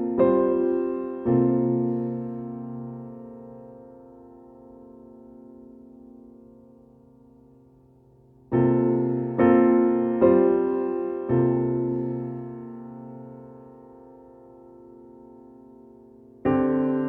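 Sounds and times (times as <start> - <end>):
piano chords: 0.0 - 17.0.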